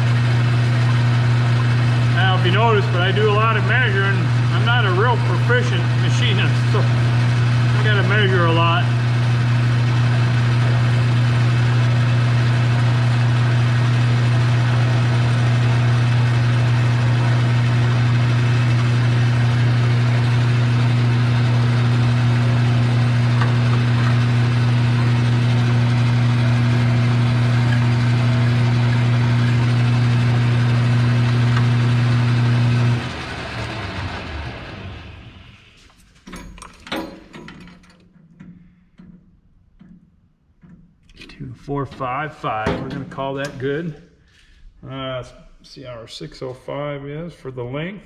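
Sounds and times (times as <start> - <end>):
lathe motor humming: 0.0 - 35.8.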